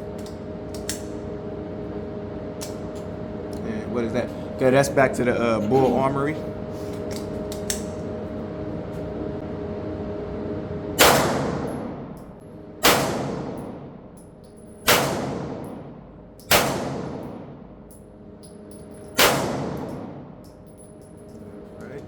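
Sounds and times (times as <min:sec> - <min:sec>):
pistol gunshots with echo: 0:11.0 - 0:12.0, 0:12.8 - 0:13.9, 0:14.8 - 0:17.7, 0:19.2 - 0:20.2.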